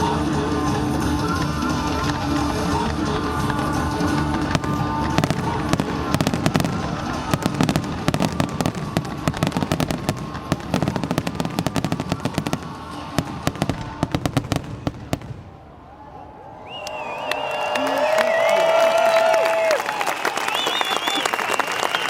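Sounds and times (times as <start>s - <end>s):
fireworks cracking and banging: 0.0s - 15.7s.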